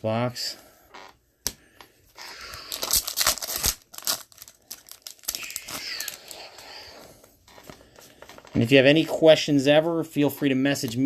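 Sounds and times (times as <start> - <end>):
cards rustling: 2.1 - 8.8
wrapper tearing and crinkling: 2.3 - 6.9.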